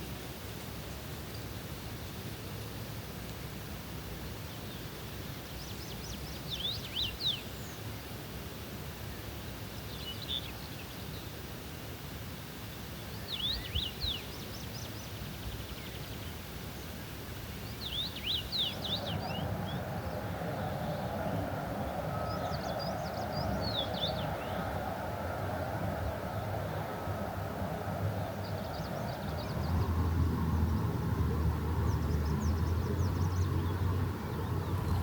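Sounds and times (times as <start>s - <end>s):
songbird singing: 4.4s - 8.0s, 9.0s - 11.4s, 12.6s - 35.0s
low outdoor rumble: 18.1s - 35.0s.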